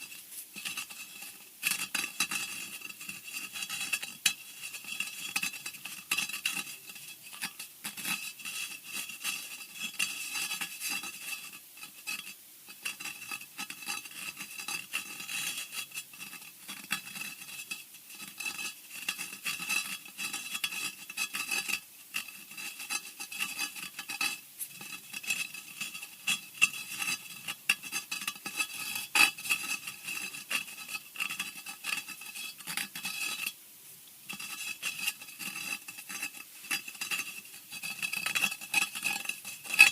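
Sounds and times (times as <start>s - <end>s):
rapid scratching and clicks: 34.3s - 39.9s.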